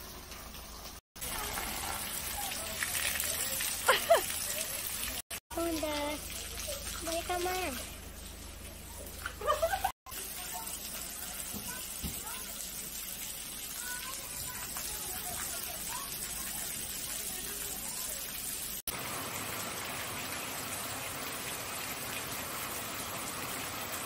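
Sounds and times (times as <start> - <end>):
steady rain hiss: 1.3 - 6.2, 18.9 - 24.0.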